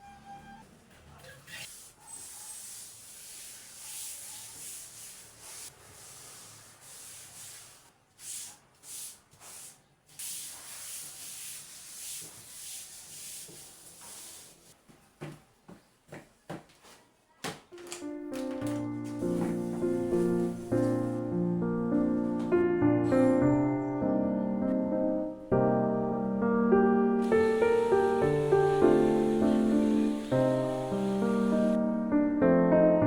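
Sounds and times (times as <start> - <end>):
hissy rubbing strokes: 19.2 - 23.5, 27.2 - 31.8.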